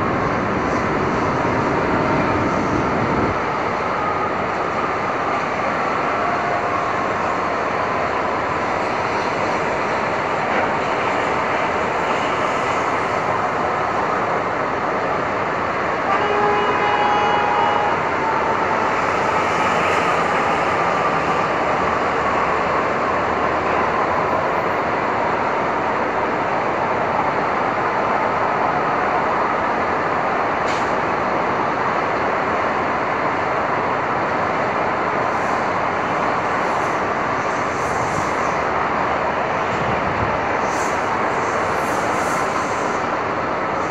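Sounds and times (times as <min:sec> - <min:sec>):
street traffic: 0:00.0 - 0:43.9
vehicle horn honking: 0:16.1 - 0:18.0.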